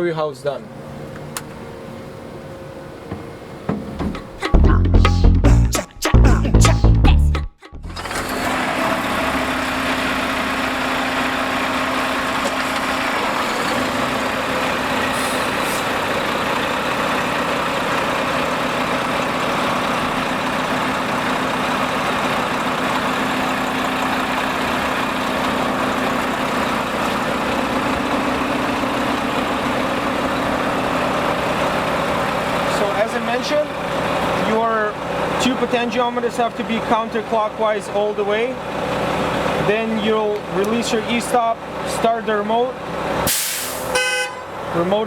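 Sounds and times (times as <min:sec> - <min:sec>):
diesel engine idling: 0:00.7 - 0:45.0.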